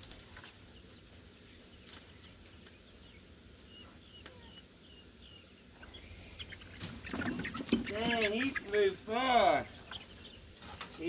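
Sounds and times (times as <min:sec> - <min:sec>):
faint high bird peeps: 0:00.7 - 0:08.9.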